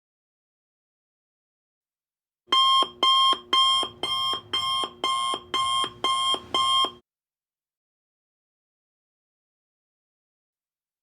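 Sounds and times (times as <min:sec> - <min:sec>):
electronic alarm beeping: 0:02.5 - 0:07.0.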